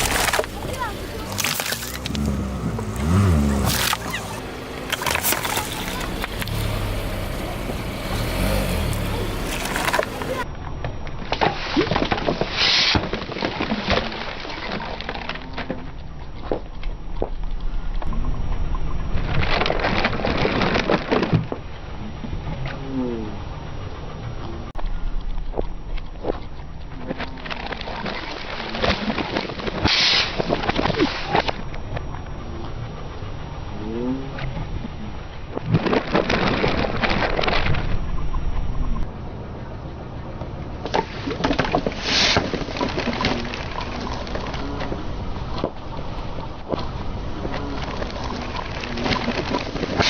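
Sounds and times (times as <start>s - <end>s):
objects crushed under car tyre: 0.0s - 7.2s, 9.3s - 10.4s
objects crunching under tyre: 0.0s - 10.5s, 40.8s - 50.0s
low rumble: 0.0s - 10.7s.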